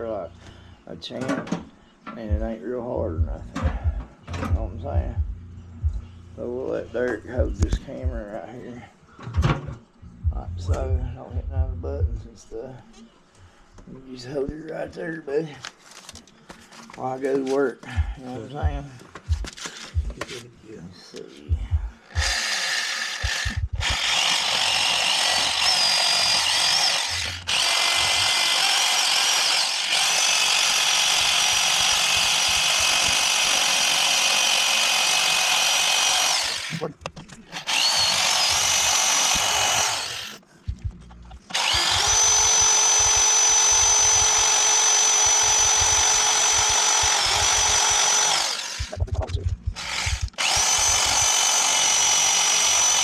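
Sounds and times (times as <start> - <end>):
power tool grinding metal chain: 22.1 - 36.9, 37.5 - 40.4, 41.5 - 53.0.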